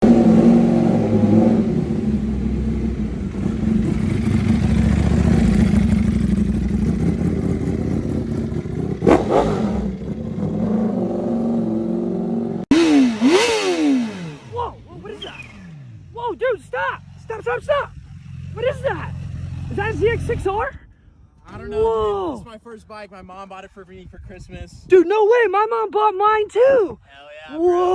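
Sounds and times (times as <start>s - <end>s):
motorcycle engine revving in blips: 0.0s - 16.2s
motorcycle engine running: 0.0s - 20.6s.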